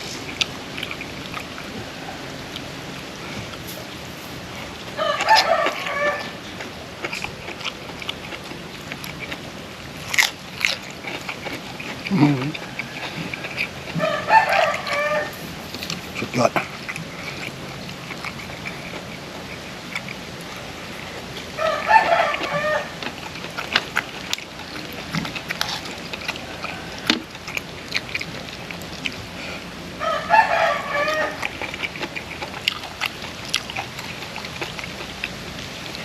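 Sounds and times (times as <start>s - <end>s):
rooster crowing: 4.9s - 6.5s, 12.5s - 15.4s, 21.6s - 23.1s, 26.3s - 27.4s, 30.0s - 31.5s.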